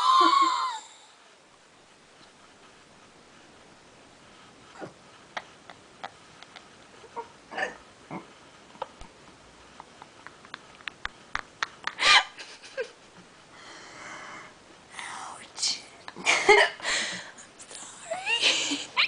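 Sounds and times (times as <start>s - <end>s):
stifled laughter: 11.8s - 13.1s.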